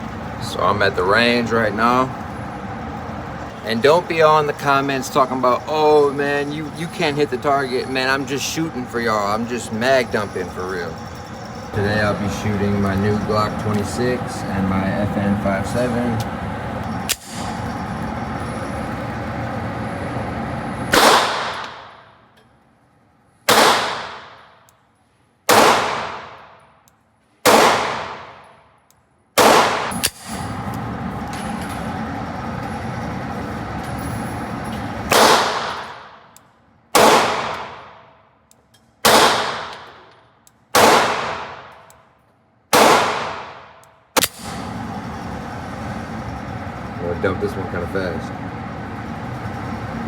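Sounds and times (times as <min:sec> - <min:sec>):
steady background hum: 0:00.0 - 0:50.0
pistol shots with echo: 0:20.9 - 0:22.0, 0:23.5 - 0:24.6, 0:25.5 - 0:26.6, 0:27.4 - 0:28.5, 0:29.4 - 0:30.3, 0:35.1 - 0:36.2, 0:36.9 - 0:38.1, 0:39.0 - 0:40.1, 0:40.7 - 0:41.8, 0:42.7 - 0:44.5.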